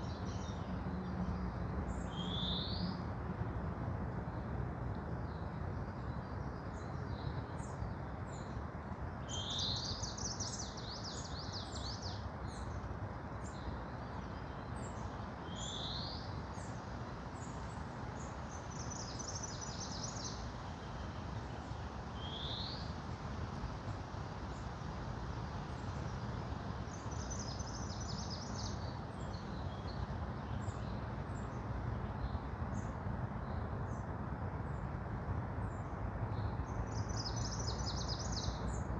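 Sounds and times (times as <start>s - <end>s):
songbirds singing: 0.0s - 3.0s, 9.2s - 12.8s, 13.4s - 23.0s, 25.7s - 34.1s, 35.6s - 38.9s.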